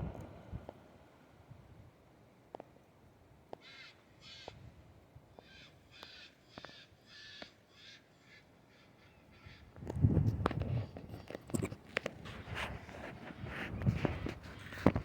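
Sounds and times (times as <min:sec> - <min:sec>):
crow cawing: 0:03.6 - 0:04.6, 0:05.4 - 0:09.8.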